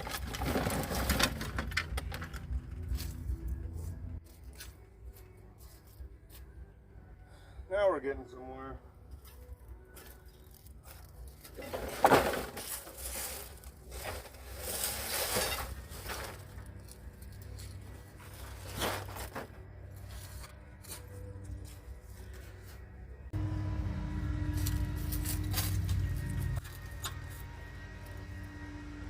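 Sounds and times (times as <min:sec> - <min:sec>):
car parts scraping and clattering: 0:00.0 - 0:04.9, 0:10.0 - 0:23.4, 0:24.4 - 0:28.2
background music: 0:00.0 - 0:29.0.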